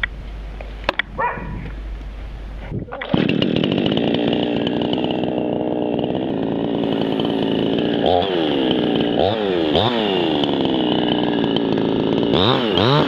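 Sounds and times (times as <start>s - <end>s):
chainsaw running: 2.9s - 13.0s.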